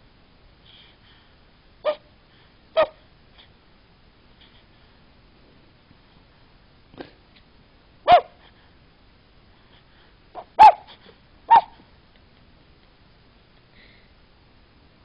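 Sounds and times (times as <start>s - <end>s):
puppy yipping: 1.8s - 2.0s, 2.8s - 3.0s, 8.1s - 8.4s, 10.4s - 11.8s.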